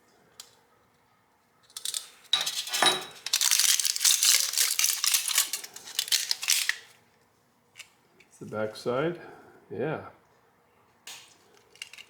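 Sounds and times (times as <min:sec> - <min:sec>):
wrapping crinkling and rattling: 0:01.7 - 0:07.0, 0:11.2 - 0:12.0.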